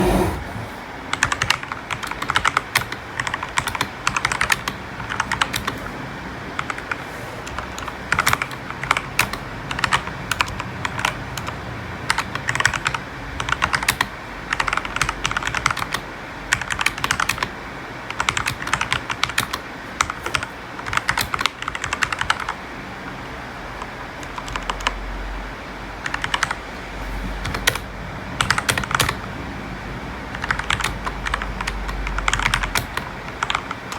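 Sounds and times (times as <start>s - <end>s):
mechanical keyboard typing: 1.1s - 5.9s, 7.8s - 17.5s, 18.1s - 22.6s, 24.3s - 24.9s, 26.0s - 26.6s, 28.4s - 29.2s, 30.3s - 33.9s.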